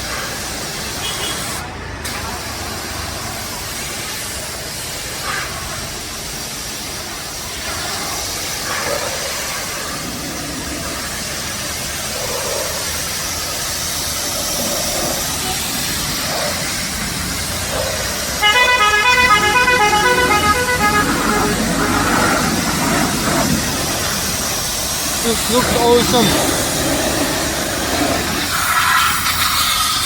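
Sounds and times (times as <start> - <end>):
water spraying on a car: 0.0 - 30.0
pulsing multi-tone sound: 18.4 - 23.0.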